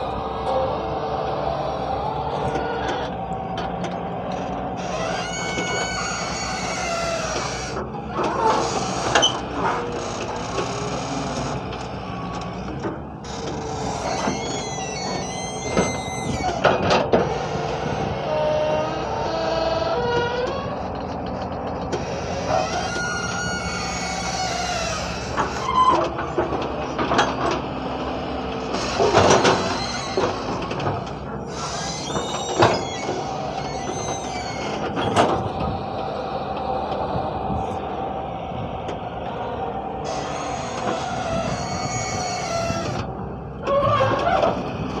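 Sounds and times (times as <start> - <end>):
excavator diesel engine running: 0.0 - 45.0
high squeals and screeches: 4.8 - 11.6, 13.2 - 20.8, 22.0 - 26.2, 28.6 - 35.9, 40.0 - 44.6.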